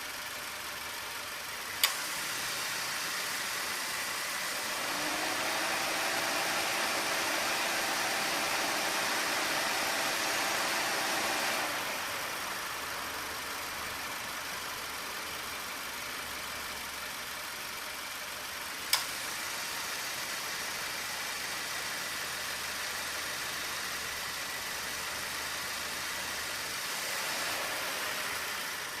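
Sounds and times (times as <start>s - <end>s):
car engine idling: 0.0s - 29.0s
sharp click: 1.8s - 2.0s, 18.9s - 19.1s.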